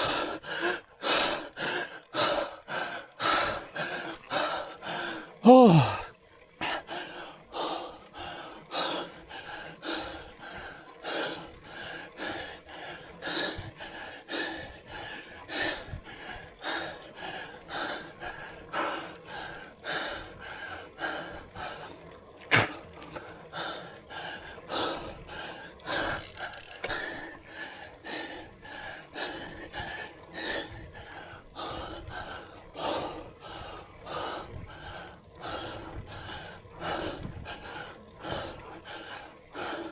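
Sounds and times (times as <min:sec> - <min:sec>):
hard rhythmic breathing: 0:00.0 - 0:39.9.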